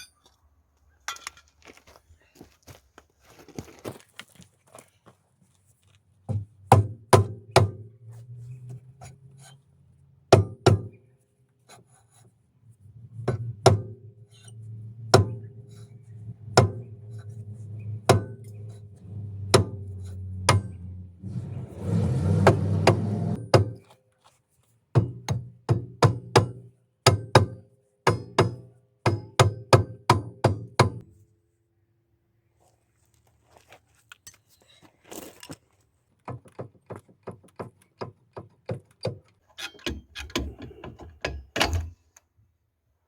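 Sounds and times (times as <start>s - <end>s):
rough scraping noise: 8.0s - 9.8s, 11.6s - 23.4s
hammer striking metal brake drum: 16.4s - 20.8s, 25.0s - 31.0s.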